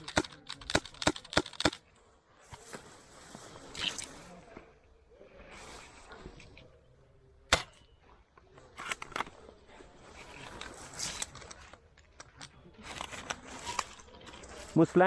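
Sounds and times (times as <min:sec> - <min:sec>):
rustling through foliage: 0:01.4 - 0:15.0.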